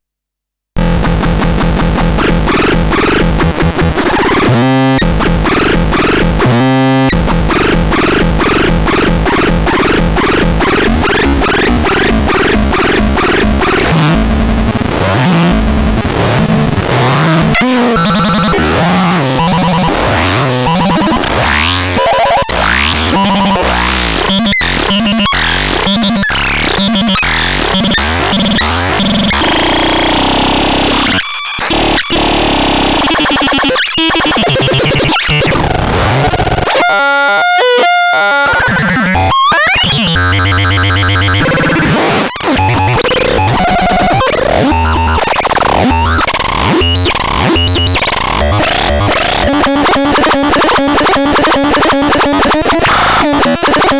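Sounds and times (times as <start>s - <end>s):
harsh synthesizer noise: 0.8s - 53.9s
wobbling stepping tones: 42.6s - 53.9s.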